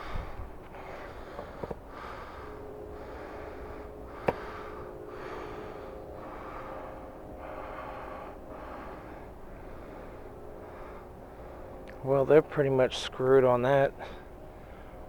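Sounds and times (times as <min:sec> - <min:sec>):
close breathing: 0:00.0 - 0:11.8
steady low hum: 0:00.0 - 0:15.0.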